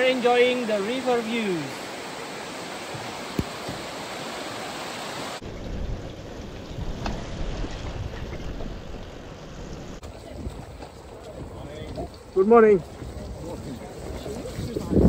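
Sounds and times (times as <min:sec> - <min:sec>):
river water rushing: 0:00.0 - 0:10.0
wind buffeting microphone: 0:05.4 - 0:15.0.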